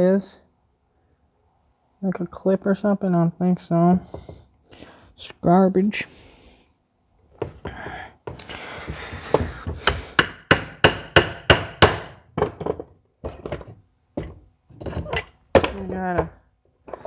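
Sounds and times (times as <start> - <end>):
hammer tapping on metal: 7.4 - 17.0.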